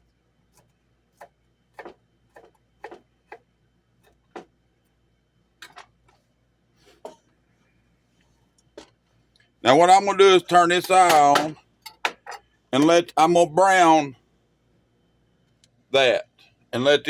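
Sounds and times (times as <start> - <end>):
kitchen items clicking and knocking: 5.6 - 6.0, 10.7 - 12.9.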